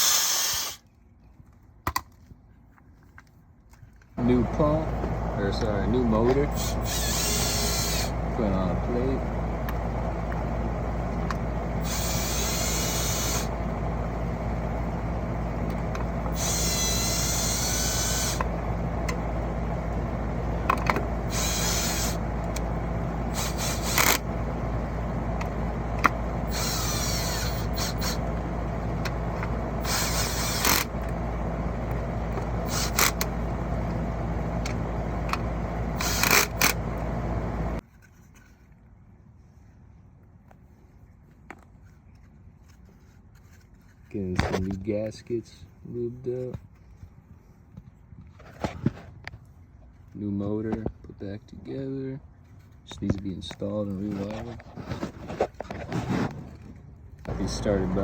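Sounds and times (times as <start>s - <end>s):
cordless power drill: 0.0s - 0.8s, 4.2s - 37.8s
steady low hum: 4.2s - 37.8s, 52.2s - 58.0s
clicks and knocks of parts: 20.6s - 22.7s.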